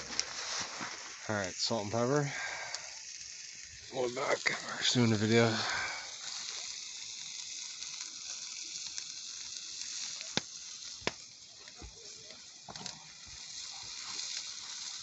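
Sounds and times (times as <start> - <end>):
burger patties sizzling in a pan: 0.0 - 15.0
sharp pops: 9.8 - 12.0.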